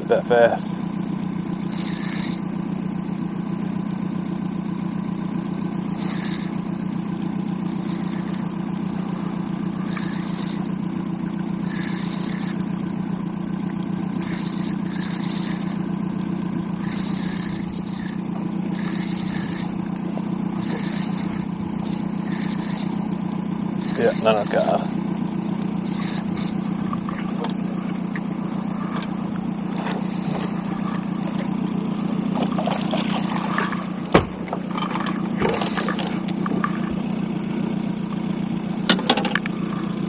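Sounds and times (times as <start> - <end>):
boat motor humming: 0.0 - 40.0.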